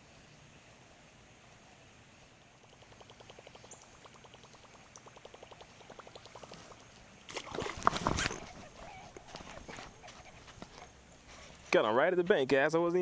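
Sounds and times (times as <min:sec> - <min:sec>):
fishing reel fast ticking: 0:02.6 - 0:06.9.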